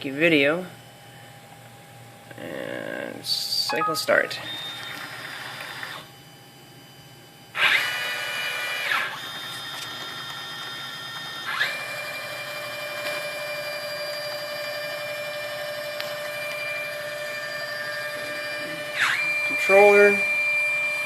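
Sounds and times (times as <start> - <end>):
stepper motors whining: 4.3 - 6.1, 7.6 - 21.0.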